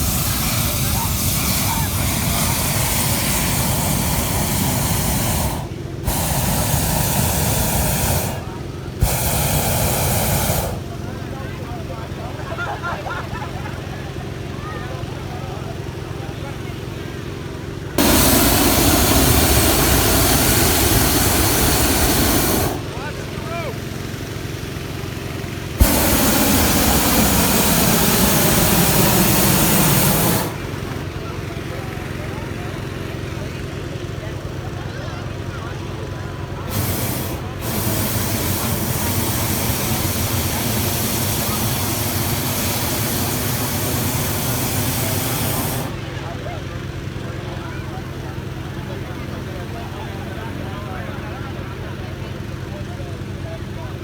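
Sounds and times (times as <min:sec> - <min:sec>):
propane burner hissing: 0:00.0 - 0:11.2, 0:18.0 - 0:33.0, 0:36.4 - 0:46.3
steady low hum: 0:00.0 - 0:11.5, 0:17.9 - 0:24.3, 0:25.6 - 0:32.4, 0:36.6 - 0:46.2.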